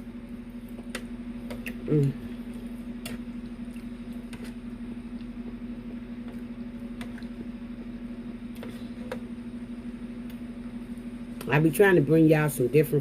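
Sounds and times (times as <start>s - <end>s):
low electrical hum: 0.0s - 13.0s
chewing and mouth smacks: 3.0s - 4.0s.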